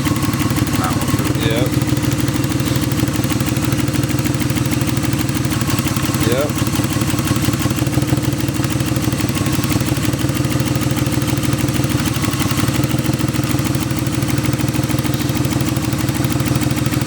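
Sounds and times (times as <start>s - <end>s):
car engine idling with misfire: 0.0s - 17.0s.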